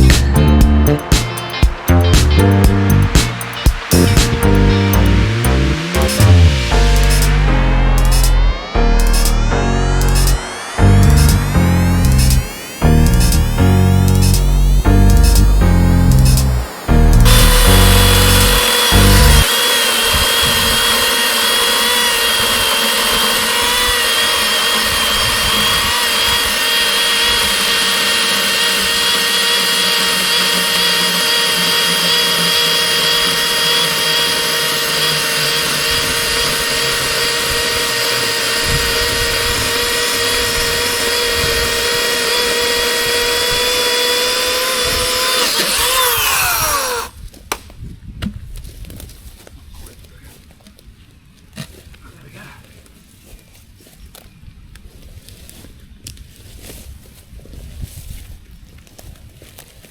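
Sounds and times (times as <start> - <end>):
electric chainsaw whining: 0.0 - 47.2.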